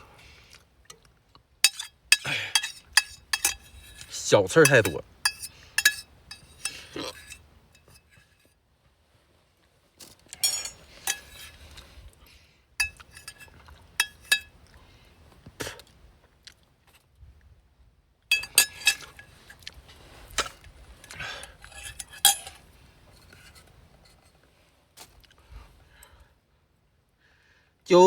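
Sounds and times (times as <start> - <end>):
utensils clinking on a dish: 1.6 - 8.5, 10.3 - 11.8, 12.8 - 14.6, 18.3 - 19.5, 20.4 - 23.6.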